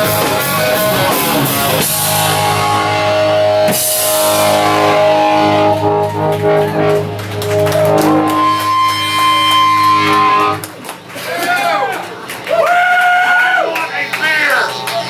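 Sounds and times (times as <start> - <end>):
electric guitar chords ringing: 0.0 - 10.7.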